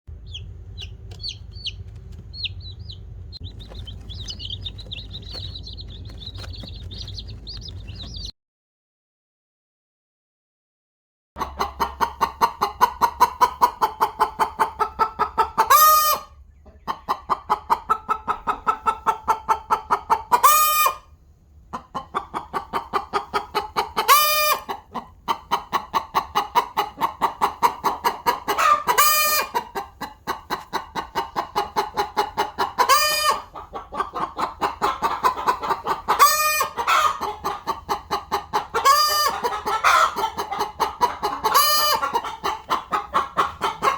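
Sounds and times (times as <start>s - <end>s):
chickens clucking: 0.1s - 8.3s, 11.4s - 43.9s
chicken squawk: 0.2s - 8.3s, 11.4s - 21.2s, 21.8s - 43.9s.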